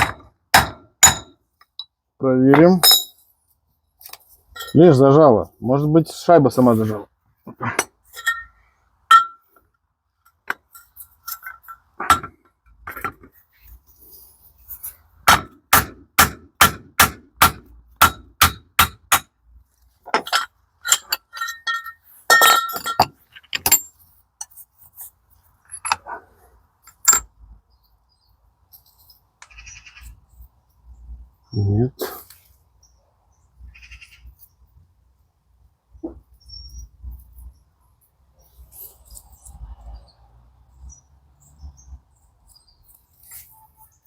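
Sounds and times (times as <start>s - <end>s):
metal parts clinking: 2.6s - 3.2s, 4.0s - 5.0s, 8.1s - 9.5s, 10.3s - 12.3s, 20.0s - 26.2s, 26.8s - 27.3s.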